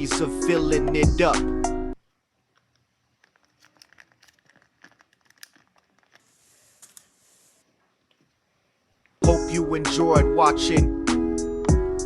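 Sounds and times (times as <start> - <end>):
handling clicks and crinkles: 2.0 - 7.1
soft hiss: 5.9 - 9.2.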